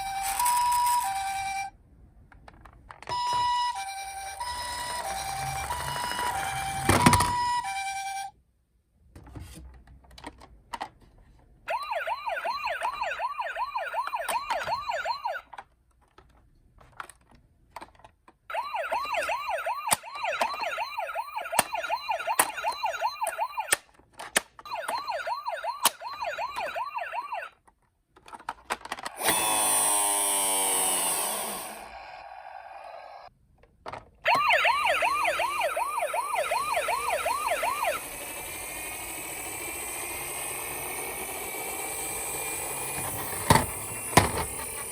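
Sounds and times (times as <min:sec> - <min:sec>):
toy siren warbling yelp: 0:00.0 - 0:01.7, 0:03.1 - 0:08.3, 0:11.7 - 0:15.5, 0:18.5 - 0:23.8, 0:24.7 - 0:27.6, 0:34.3 - 0:44.9.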